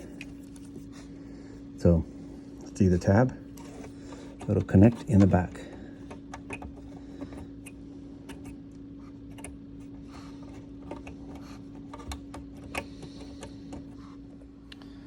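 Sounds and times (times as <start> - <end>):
steady low hum: 0.0 - 15.0
plastic parts clicking and tapping: 3.6 - 8.6, 10.5 - 14.0.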